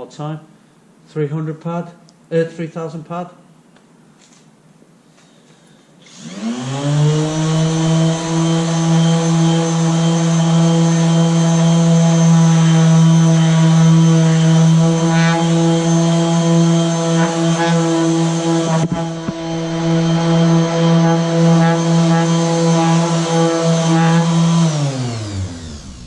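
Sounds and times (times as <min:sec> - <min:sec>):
electric sander humming: 0:06.1 - 0:26.0.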